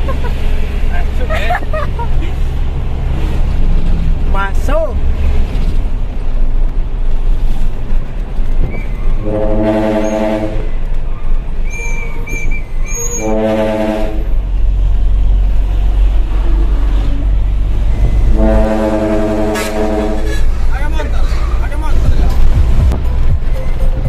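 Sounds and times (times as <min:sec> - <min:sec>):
diesel engine rumbling: 0:00.0 - 0:24.0
truck air horn blasts: 0:09.2 - 0:10.8, 0:12.9 - 0:14.4, 0:18.2 - 0:20.6.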